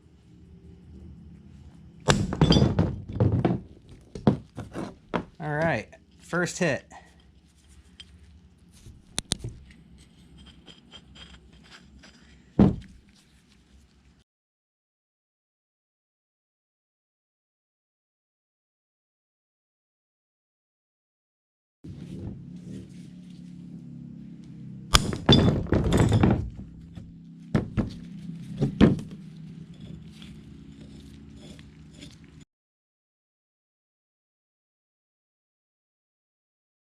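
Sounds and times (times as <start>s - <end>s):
steady low hum: 0.0s - 14.2s, 21.9s - 32.4s
hammer striking metal stud: 2.1s - 3.4s, 24.9s - 26.5s.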